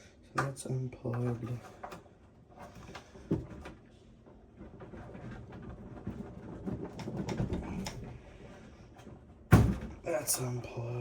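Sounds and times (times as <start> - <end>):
cables rustling in computer case: 2.5 - 9.3.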